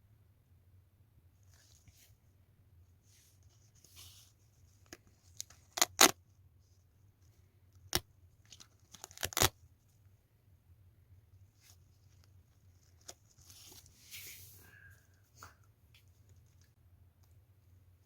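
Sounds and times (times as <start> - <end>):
packaging being torn by hand: 8.9 - 9.6.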